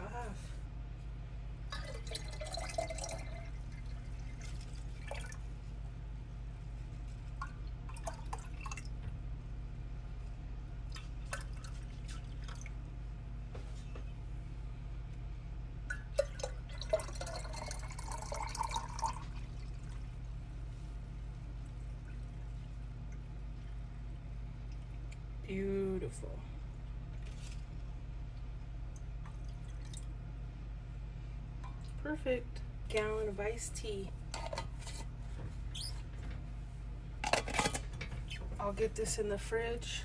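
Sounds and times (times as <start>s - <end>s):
steady low hum: 0.0s - 40.0s
liquid pouring into a jug: 1.7s - 5.5s, 7.4s - 9.0s, 10.9s - 12.8s, 15.9s - 20.4s, 28.4s - 30.2s.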